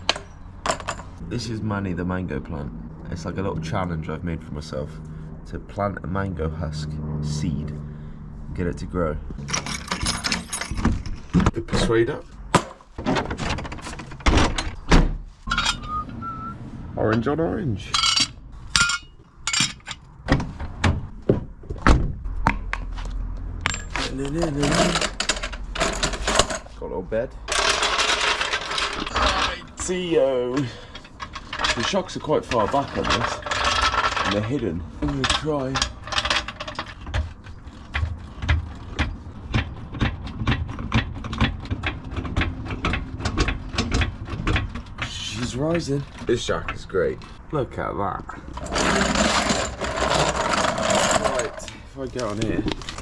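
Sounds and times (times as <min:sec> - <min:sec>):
hard tools knocking and clunking: 0:00.0 - 0:01.2, 0:09.3 - 0:16.0, 0:17.9 - 0:22.8, 0:27.5 - 0:47.4, 0:48.4 - 0:53.0
car jack clicking and clunking: 0:35.1 - 0:47.4.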